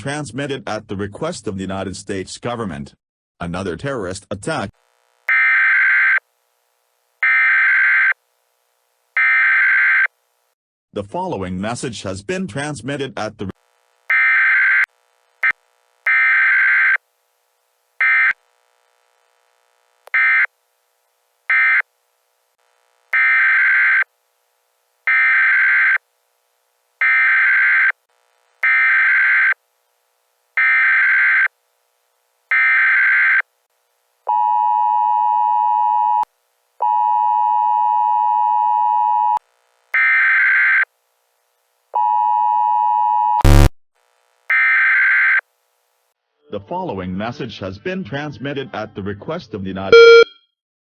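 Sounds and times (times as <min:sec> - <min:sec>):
buzzy digital data bursts: 0:43.4 - 0:43.7
two-tone alert signal: 0:43.4 - 0:43.7, 0:49.9 - 0:50.4.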